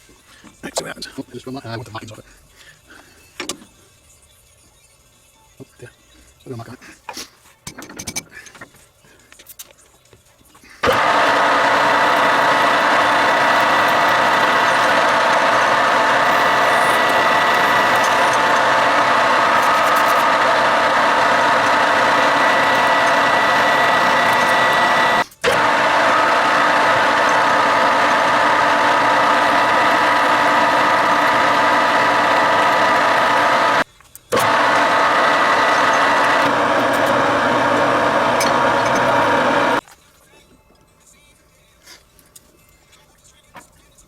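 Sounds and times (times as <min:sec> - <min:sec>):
workshop machine motor running: 0:10.8 - 0:39.8.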